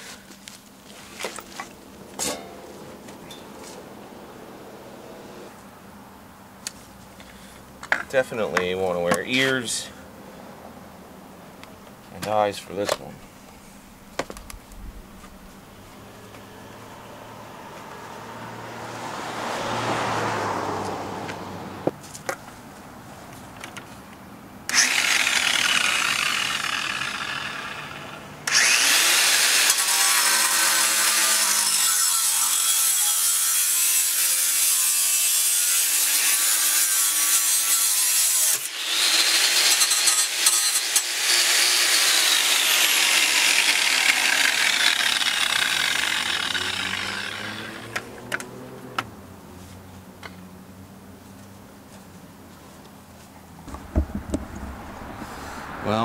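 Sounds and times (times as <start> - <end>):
power tool cutting metal pipe: 24.7 - 48.1.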